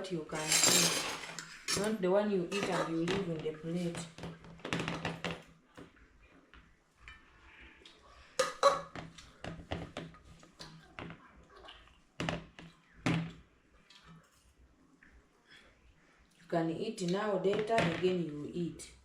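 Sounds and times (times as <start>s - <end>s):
utensils and dishes clinking: 0.3s - 3.1s.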